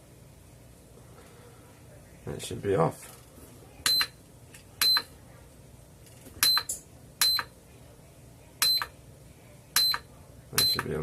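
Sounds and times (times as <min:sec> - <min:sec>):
charger buzzer beeps: 0:03.9 - 0:04.1, 0:04.8 - 0:05.1, 0:06.4 - 0:07.5, 0:08.6 - 0:08.9, 0:09.8 - 0:10.9.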